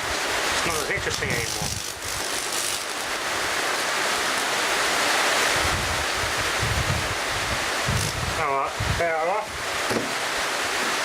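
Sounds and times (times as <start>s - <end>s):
steady hiss: 0.0s - 11.0s
wind buffeting microphone: 5.5s - 9.6s.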